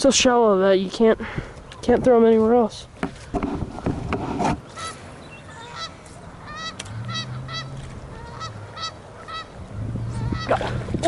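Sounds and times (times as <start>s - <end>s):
geese honking: 4.7s - 10.8s.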